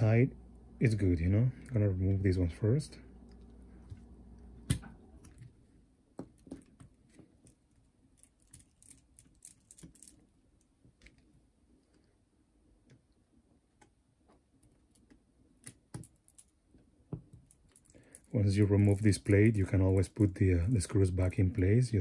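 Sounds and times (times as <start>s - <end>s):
small parts clicking and ticking: 6.4s - 12.1s, 14.6s - 16.6s, 17.3s - 19.6s.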